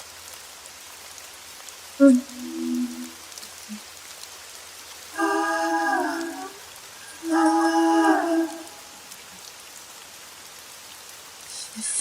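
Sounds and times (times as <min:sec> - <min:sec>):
steady rain: 0:00.0 - 0:12.0
wordless a cappella vocal notes: 0:02.0 - 0:03.2, 0:05.1 - 0:09.2.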